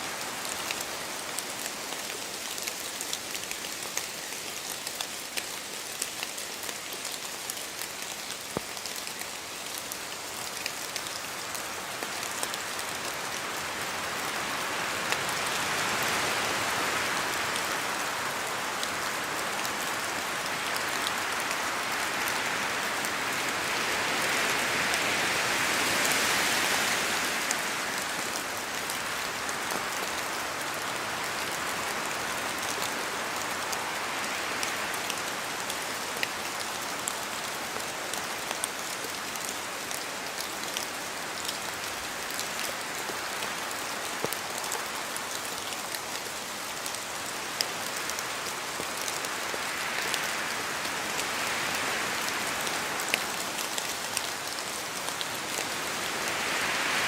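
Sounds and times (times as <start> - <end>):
steady rain in a forest: 0.0 - 57.0
wind in the trees: 46.5 - 57.0.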